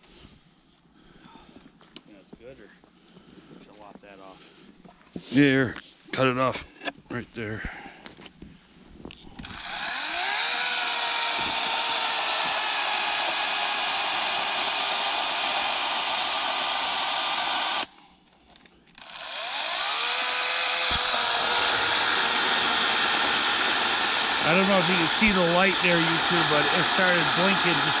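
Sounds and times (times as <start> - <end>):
electric chainsaw motor whining: 9.4 - 17.9, 19.0 - 28.0.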